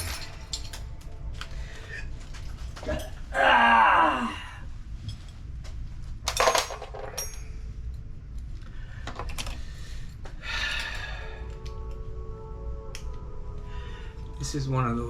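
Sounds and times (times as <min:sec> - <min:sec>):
ringing metallic clank: 0:00.0 - 0:01.2, 0:06.5 - 0:07.6
metal tools clinking: 0:00.0 - 0:03.2, 0:06.3 - 0:08.0.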